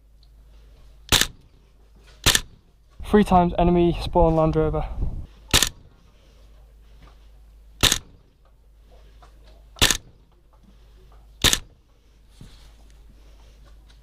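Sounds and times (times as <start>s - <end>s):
airsoft rifle shots: 1.1s - 1.5s, 2.2s - 2.7s, 5.5s - 5.9s, 7.8s - 8.3s, 9.8s - 10.2s, 11.4s - 11.8s.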